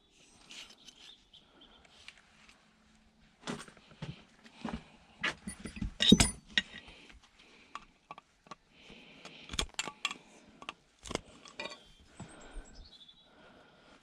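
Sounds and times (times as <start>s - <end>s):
clinks and knocks of hand tools: 5.2s - 7.0s, 9.2s - 12.3s.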